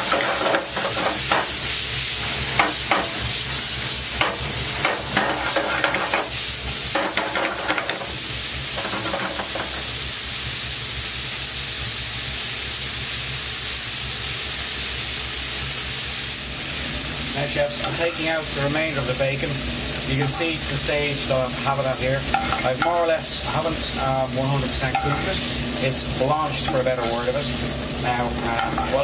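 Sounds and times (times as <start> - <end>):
utensil scraping a pan: 0.0 - 1.6, 4.2 - 8.0, 20.1 - 20.9, 22.2 - 23.7, 24.4 - 27.5, 28.4 - 29.0
bacon sizzling in a pan: 0.0 - 29.0.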